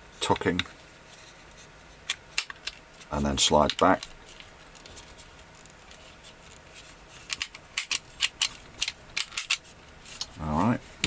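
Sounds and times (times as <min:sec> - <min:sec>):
pistol parts clicking into place: 0:07.3 - 0:09.6.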